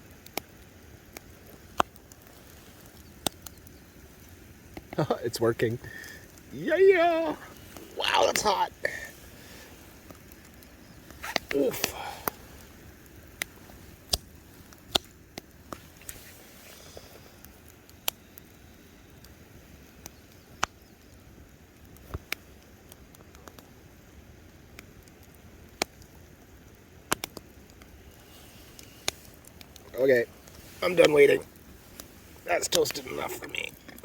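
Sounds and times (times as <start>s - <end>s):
campfire crackling: 0.0s - 34.0s
faint steady hiss: 0.0s - 34.0s.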